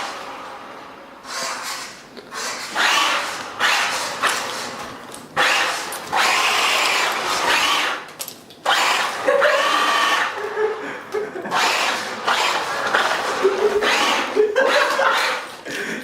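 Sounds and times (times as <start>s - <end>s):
toy car electric motor whining: 1.2s - 4.8s, 5.4s - 10.4s, 11.5s - 15.5s.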